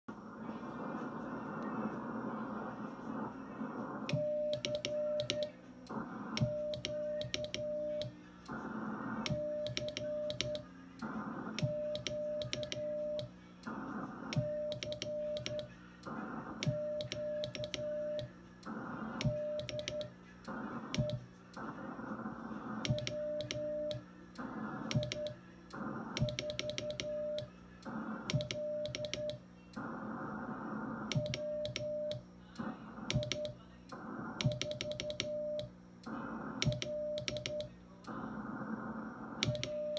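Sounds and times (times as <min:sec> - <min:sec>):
morse code beeps: 0:09.3 - 0:10.6, 0:26.2 - 0:27.5, 0:36.6 - 0:37.7.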